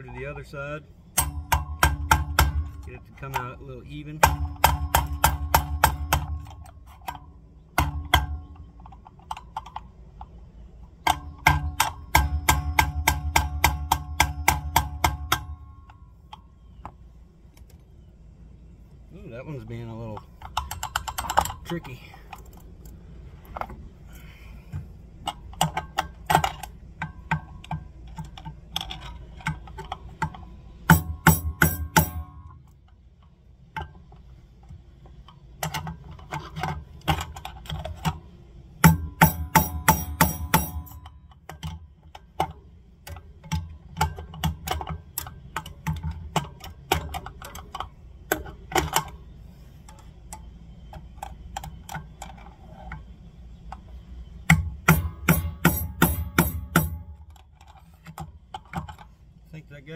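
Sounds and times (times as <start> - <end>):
hammer tapping metal: 1.2 - 3.4, 4.2 - 7.2, 30.9 - 32.5, 38.8 - 41.1, 54.5 - 57.3.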